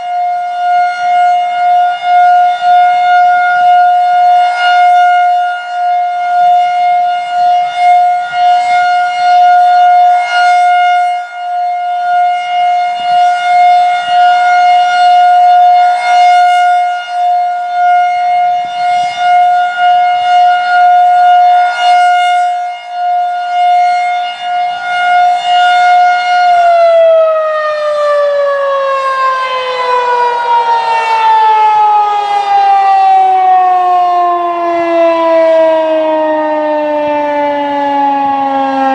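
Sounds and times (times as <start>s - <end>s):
rotating warning siren wailing: 0.0s - 38.9s.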